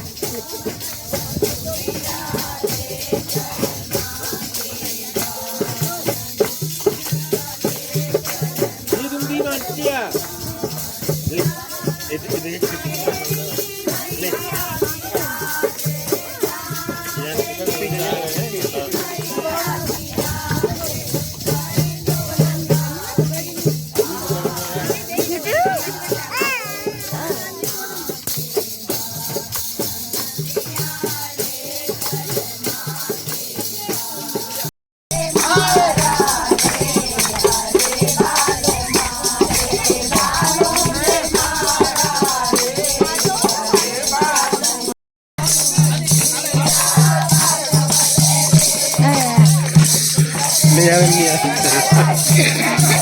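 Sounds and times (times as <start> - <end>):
rattling shaker beat: 0.0 - 53.0
person singing: 34.0 - 44.8, 45.4 - 53.0
folk dance music: 35.1 - 44.9, 48.3 - 53.0.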